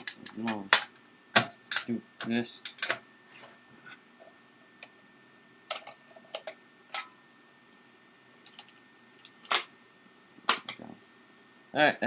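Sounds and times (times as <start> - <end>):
plastic parts clicking: 0.0 - 3.0
faint high whine: 0.0 - 12.0.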